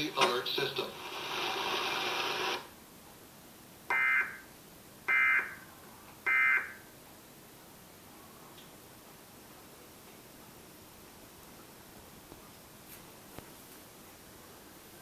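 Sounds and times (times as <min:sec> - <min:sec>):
steady hiss: 0:00.0 - 0:02.8.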